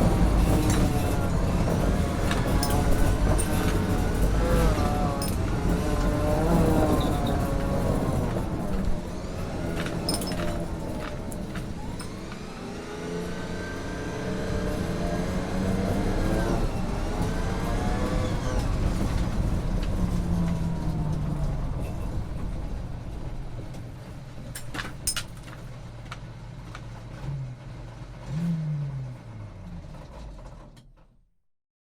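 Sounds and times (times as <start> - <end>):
armoured vehicle engine running: 0.0 - 31.1
sharp metal clanks: 0.3 - 7.5, 9.7 - 11.1, 24.6 - 25.6.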